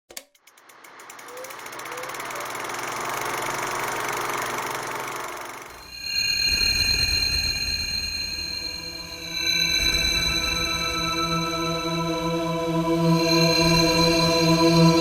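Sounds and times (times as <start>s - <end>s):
sustained bell-like ringing tone: 5.8s - 15.0s.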